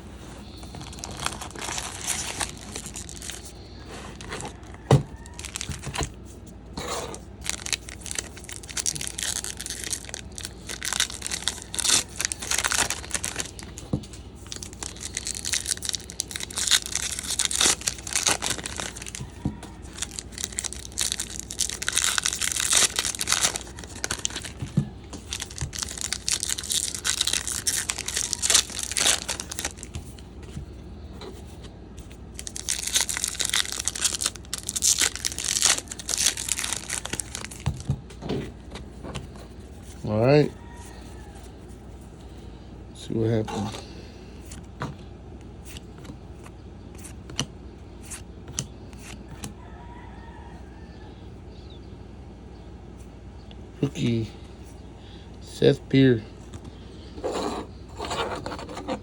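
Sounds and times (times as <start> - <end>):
plastic wrapping crinkling and tearing: 0.6 - 6.1, 7.4 - 30.3, 32.0 - 37.9.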